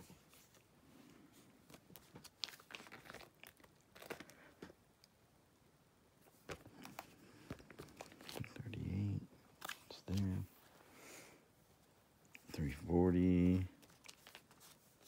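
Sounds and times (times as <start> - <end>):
cards clicking and rustling: 1.6 - 4.8, 6.4 - 8.8, 9.5 - 10.4, 13.4 - 15.0.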